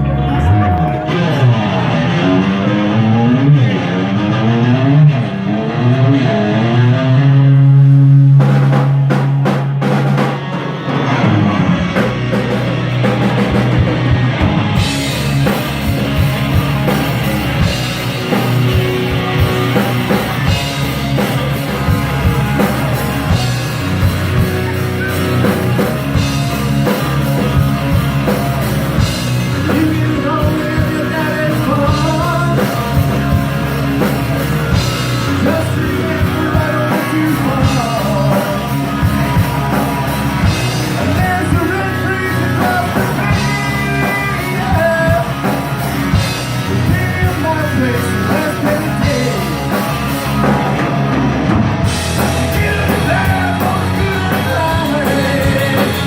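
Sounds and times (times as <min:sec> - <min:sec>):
bass guitar: 0:00.0 - 0:56.0
drums: 0:00.0 - 0:56.0
electric guitar: 0:00.0 - 0:56.0
person singing: 0:28.2 - 0:50.6, 0:52.1 - 0:56.0.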